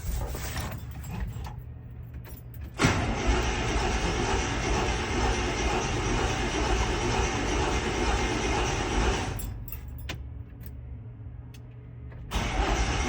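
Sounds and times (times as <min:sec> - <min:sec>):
truck engine starting and running: 0:02.4 - 0:10.2, 0:11.6 - 0:13.0.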